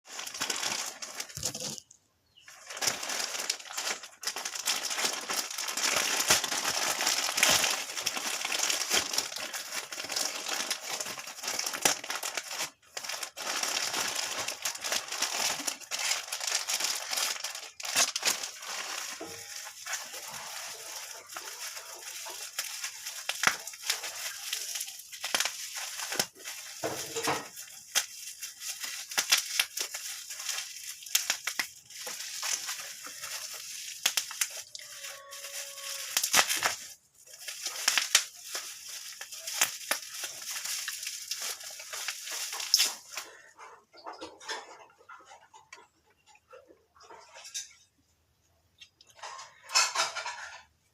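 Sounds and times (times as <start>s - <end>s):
packaging crinkling: 0.1s - 43.6s.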